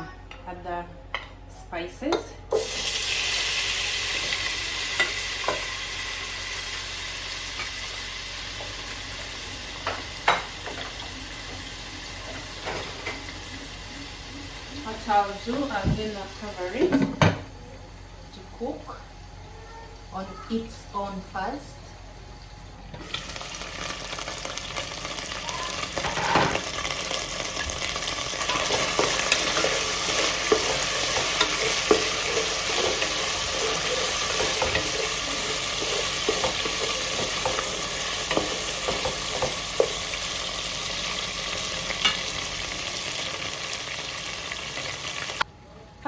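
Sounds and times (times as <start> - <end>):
chicken frying in hot oil: 2.6 - 14.9, 23.0 - 45.5.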